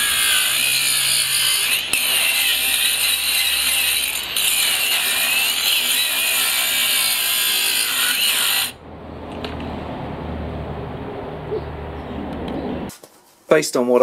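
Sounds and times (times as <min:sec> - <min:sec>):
angle grinder grinding concrete: 0:00.0 - 0:08.8
low rumble: 0:08.8 - 0:12.9.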